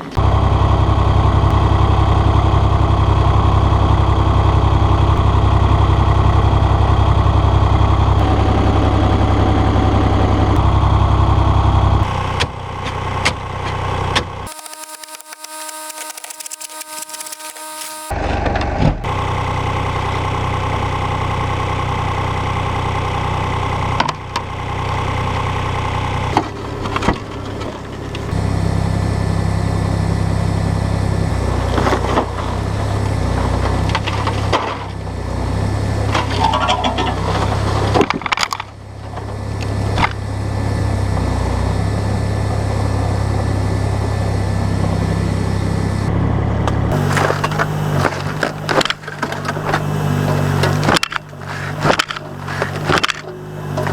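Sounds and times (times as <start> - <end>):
machine engine running: 0.0 - 18.5, 44.8 - 53.9
ice cracking and scraping: 46.9 - 53.9.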